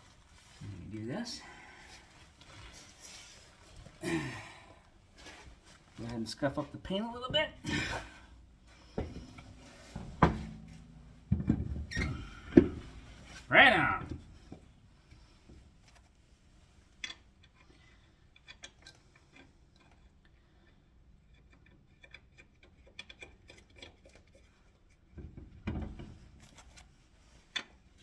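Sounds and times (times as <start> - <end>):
dull knock: 8.9 - 13.4.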